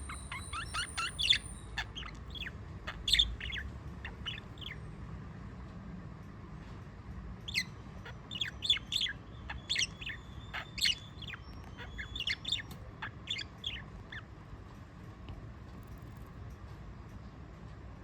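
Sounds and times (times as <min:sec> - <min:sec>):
budgerigar chirping: 0:00.0 - 0:04.8, 0:07.5 - 0:14.3.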